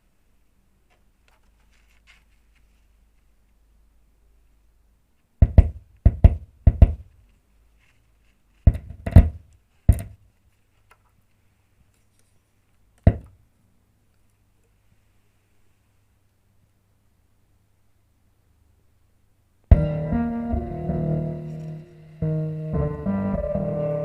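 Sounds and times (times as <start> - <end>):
faint low hum: 0.0 - 24.0
heavy knocks with deep thud: 5.4 - 7.1, 8.7 - 10.2, 13.1 - 13.3, 19.7 - 21.2.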